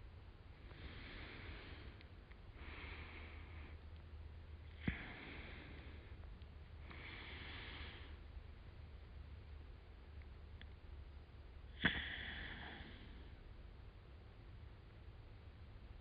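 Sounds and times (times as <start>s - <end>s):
faint low hum: 0.0s - 16.0s
soft breathing: 0.6s - 8.4s, 11.7s - 13.5s.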